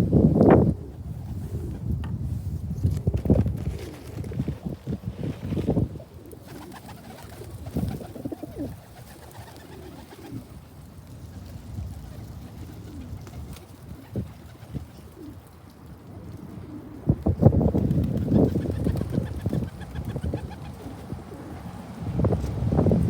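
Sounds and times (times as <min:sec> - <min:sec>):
pigeons cooing: 0:00.0 - 0:02.0, 0:03.4 - 0:11.0, 0:11.7 - 0:23.0.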